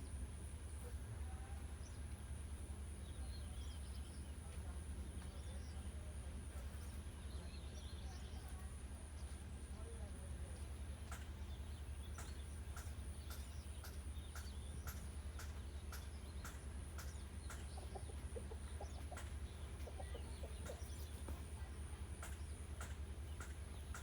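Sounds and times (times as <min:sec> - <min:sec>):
steady low hum: 0:00.0 - 0:24.0
hens clucking: 0:16.4 - 0:21.6.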